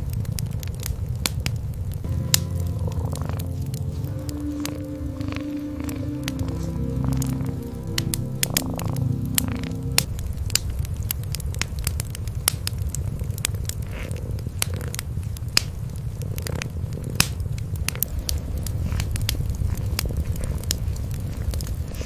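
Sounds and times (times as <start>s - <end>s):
wood fire crackling: 0.0s - 22.0s
cats purring: 2.1s - 10.1s, 16.0s - 22.0s.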